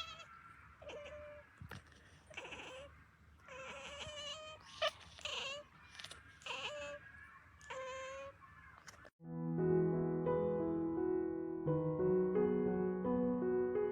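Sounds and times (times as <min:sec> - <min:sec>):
cats meowing: 0:00.0 - 0:09.1
piano music: 0:09.2 - 0:13.9.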